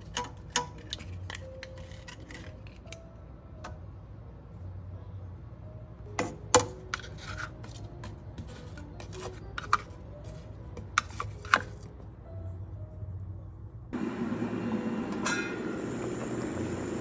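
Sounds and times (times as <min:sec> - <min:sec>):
dishes and utensils clicking: 0:00.0 - 0:03.0.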